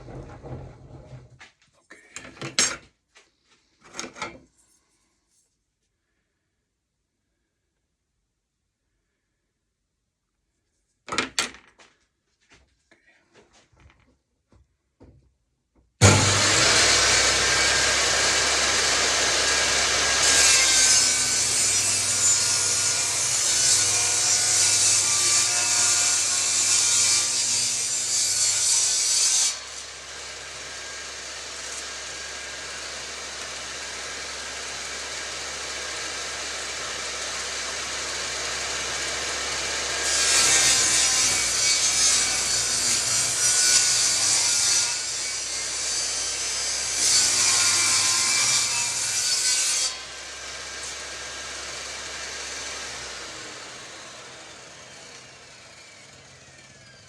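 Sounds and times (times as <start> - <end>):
electric saw cutting wood: 16.0 - 57.0.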